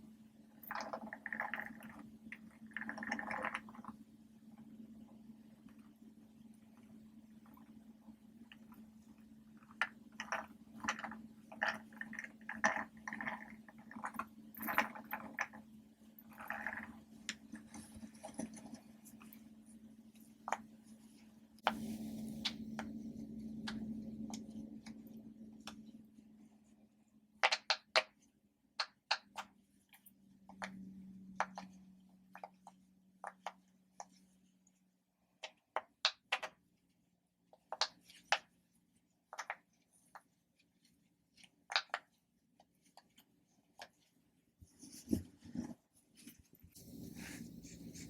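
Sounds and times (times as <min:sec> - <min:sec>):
faint steady hum: 0:00.0 - 0:27.3, 0:46.7 - 0:48.0.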